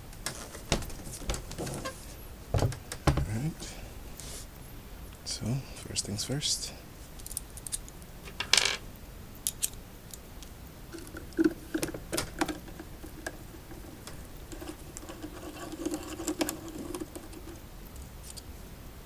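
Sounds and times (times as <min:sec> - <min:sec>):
clicks and scratching on plastic parts: 0:11.0 - 0:18.5.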